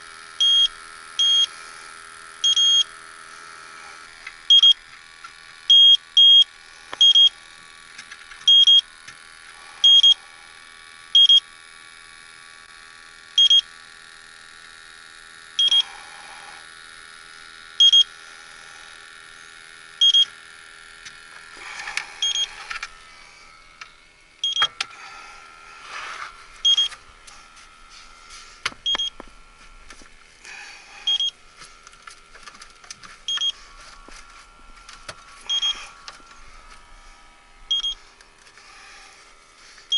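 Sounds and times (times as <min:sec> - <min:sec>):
leak detector beeping: 0:00.1 - 0:03.2, 0:04.4 - 0:11.6, 0:13.3 - 0:13.8, 0:15.5 - 0:16.2, 0:17.6 - 0:18.3, 0:19.8 - 0:23.0, 0:23.8 - 0:25.2, 0:26.5 - 0:36.8, 0:37.6 - 0:38.1
rustling and scraping handling noise: 0:25.7 - 0:30.4, 0:31.4 - 0:38.7.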